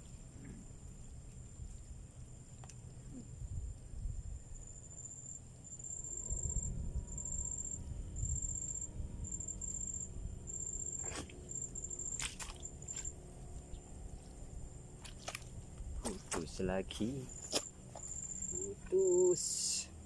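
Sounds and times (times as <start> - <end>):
insect high thin trill: 4.6 - 13.2, 16.1 - 19.8
low rumble: 6.0 - 12.2.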